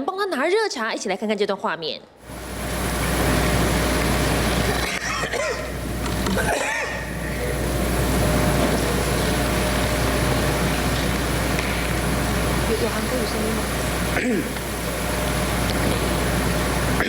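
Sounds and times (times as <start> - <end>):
microphone hiss and hum: 2.2 - 17.0
man coughing: 4.8 - 5.7, 6.3 - 7.1, 14.2 - 14.6.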